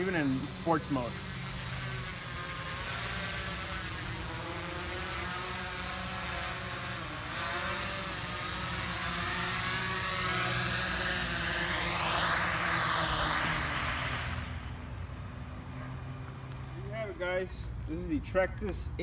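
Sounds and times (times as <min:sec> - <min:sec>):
quadcopter propellers whirring: 0:00.0 - 0:19.0.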